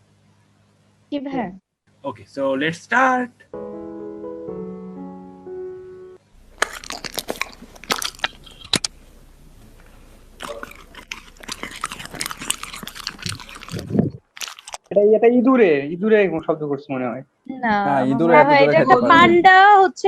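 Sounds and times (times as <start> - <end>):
piano notes: 3.5 - 6.5
dog crunching french fries: 6.4 - 14.9.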